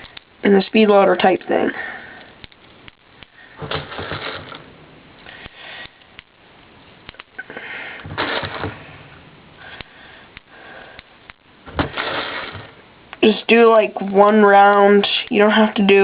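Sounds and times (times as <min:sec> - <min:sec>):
plastic pellets rattling: 0:03.6 - 0:04.7, 0:08.0 - 0:08.9, 0:11.7 - 0:12.8.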